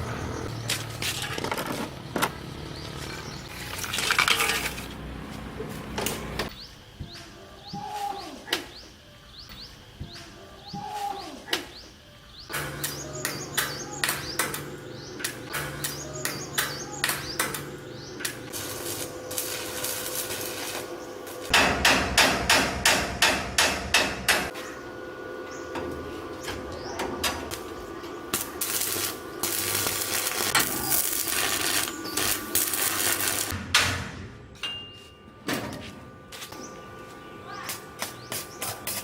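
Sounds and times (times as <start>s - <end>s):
hammer blows on machine: 21.5s - 24.6s.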